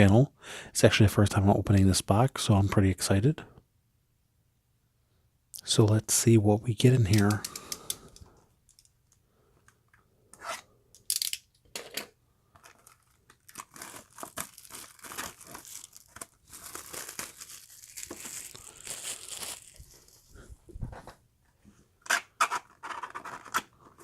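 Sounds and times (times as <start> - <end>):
plastic wrap tearing and crinkling: 12.6 - 20.4.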